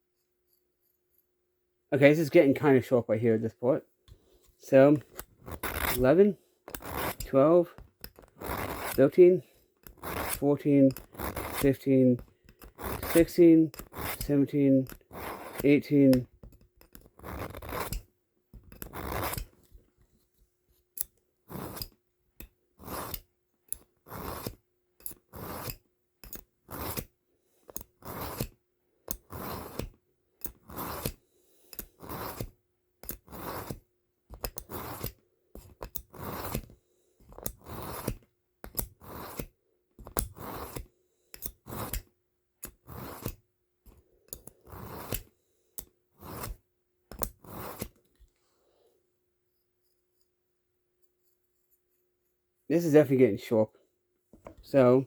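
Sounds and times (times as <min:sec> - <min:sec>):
knife scraping on sharpener: 0:05.0 - 0:06.1, 0:06.7 - 0:09.2, 0:09.8 - 0:18.1, 0:18.7 - 0:19.6, 0:21.0 - 0:27.1, 0:27.7 - 0:36.7, 0:37.3 - 0:48.0.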